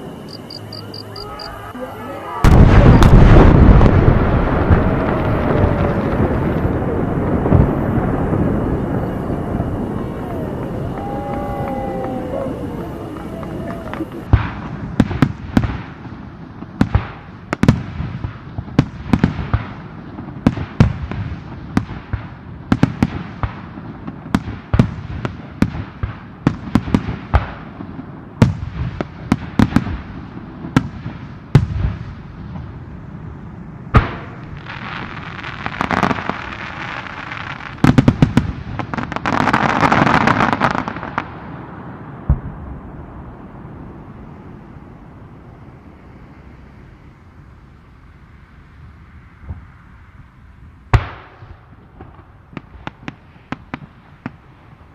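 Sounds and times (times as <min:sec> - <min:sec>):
fireworks banging: 0:02.4 - 0:45.0
fireworks hissing: 0:34.1 - 0:41.3.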